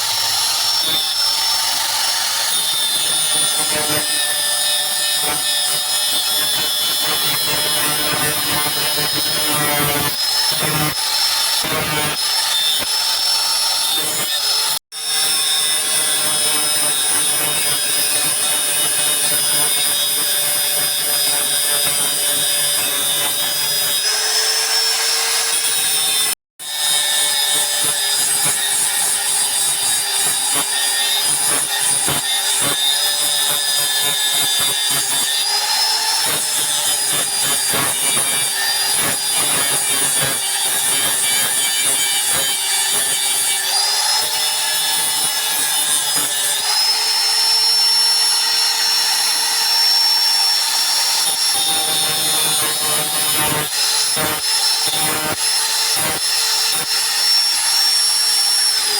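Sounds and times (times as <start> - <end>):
blade grinding rasp: 0.0 - 58.9
electric grinder whining: 0.0 - 58.9.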